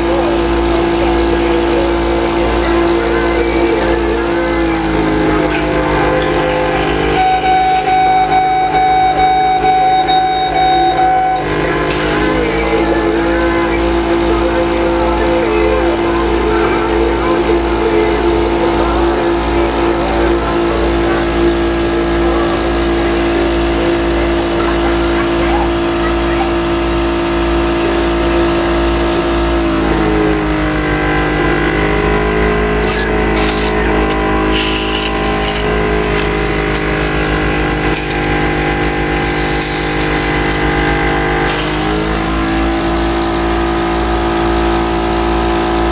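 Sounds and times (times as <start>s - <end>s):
electric percussor buzzing: 0.0s - 45.9s
low pulsing: 0.0s - 45.9s
held high note: 1.9s - 26.7s.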